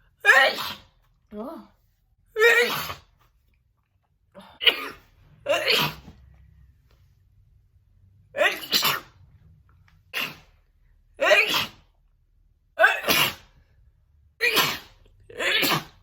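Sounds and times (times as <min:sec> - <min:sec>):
woman sneezing: 0:00.2 - 0:01.0, 0:02.4 - 0:03.1, 0:04.4 - 0:06.2, 0:08.4 - 0:09.2, 0:10.1 - 0:10.6, 0:11.2 - 0:11.9, 0:12.8 - 0:13.6, 0:14.4 - 0:16.0.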